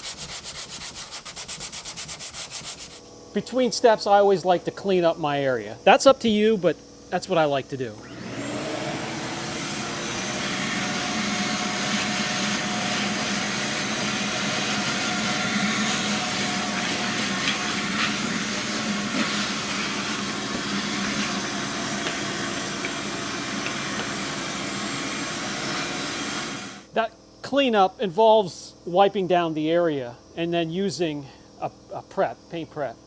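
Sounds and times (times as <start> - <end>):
shop vacuum running: 5.8 - 26.9.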